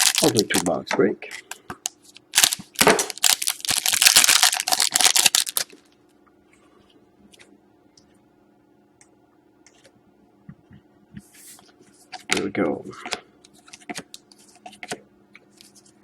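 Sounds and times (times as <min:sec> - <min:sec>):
foil wrapper tearing and crinkling: 0:00.0 - 0:00.7, 0:02.2 - 0:05.8.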